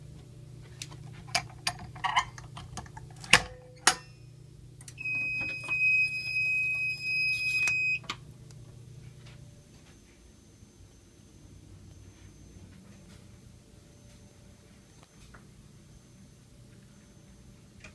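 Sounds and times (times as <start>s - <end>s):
fire alarm beeping: 3.8s - 8.2s.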